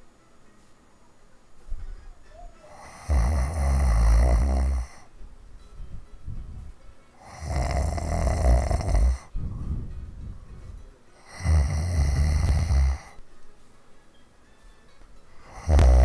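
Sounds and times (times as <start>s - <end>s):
quiet breathing: 0.0s - 13.9s, 15.3s - 16.0s
woman snoring: 2.6s - 5.1s, 7.2s - 9.3s, 11.2s - 13.2s, 15.4s - 16.0s.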